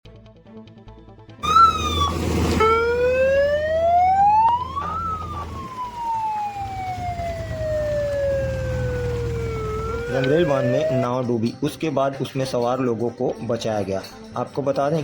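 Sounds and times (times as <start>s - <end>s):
siren wailing: 1.4s - 11.1s.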